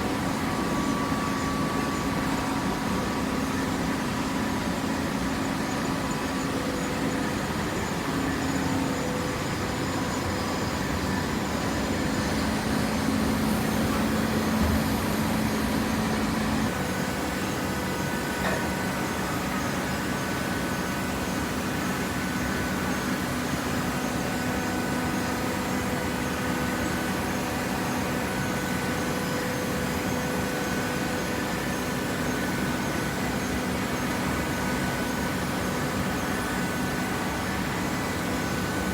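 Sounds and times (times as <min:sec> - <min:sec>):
hydraulic baler motor humming: 0:11.6 - 0:16.8.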